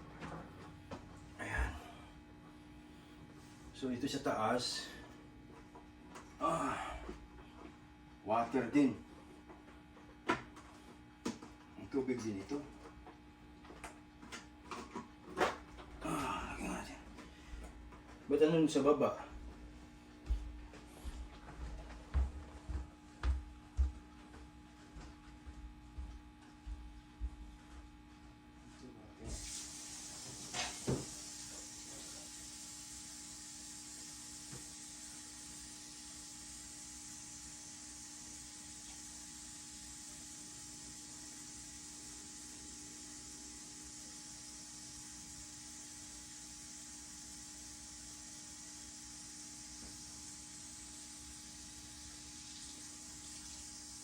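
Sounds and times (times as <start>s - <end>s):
electrical hum: 0.0s - 54.0s
even hiss: 29.2s - 54.0s
tap water running: 29.3s - 54.0s.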